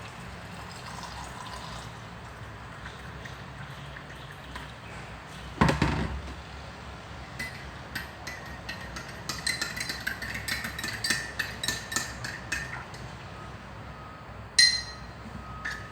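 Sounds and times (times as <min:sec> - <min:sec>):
spoon clinking in a cup: 0:07.4 - 0:13.1, 0:14.6 - 0:15.9.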